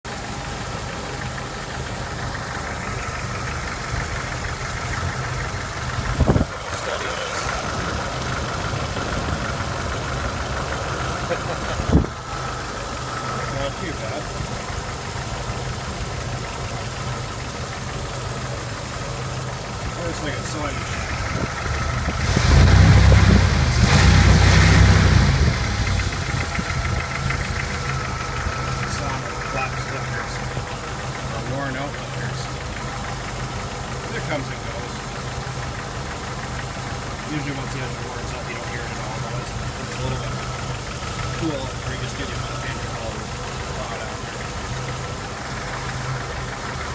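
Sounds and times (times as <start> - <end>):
car engine idling: 0.0 - 46.9
rapid valvetrain ticking: 25.5 - 46.9.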